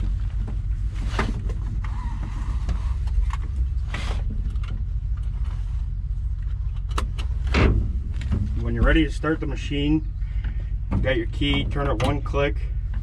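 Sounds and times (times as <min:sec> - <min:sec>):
seat belt clicks and rattles: 0:00.0 - 0:05.6, 0:06.4 - 0:09.1
low rumble: 0:00.0 - 0:13.0.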